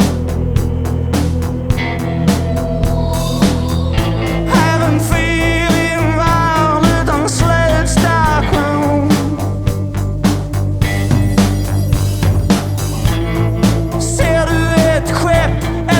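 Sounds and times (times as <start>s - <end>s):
rock music: 0.0s - 15.9s.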